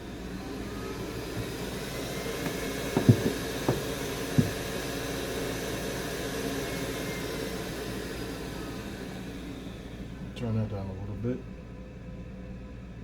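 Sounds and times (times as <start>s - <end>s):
blower whirring: 0.0s - 12.0s
tools tapping on bench: 3.0s - 4.6s.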